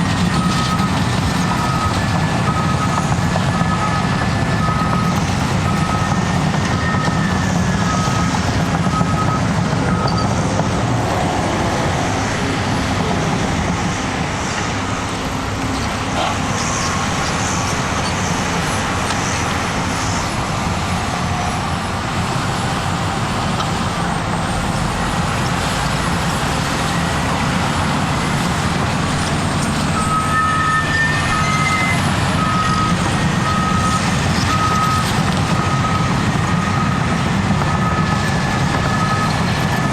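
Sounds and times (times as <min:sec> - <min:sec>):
bulldozer diesel engine running: 0:00.0 - 0:39.9
reverse alarm beeping: 0:00.3 - 0:10.4, 0:30.0 - 0:39.4.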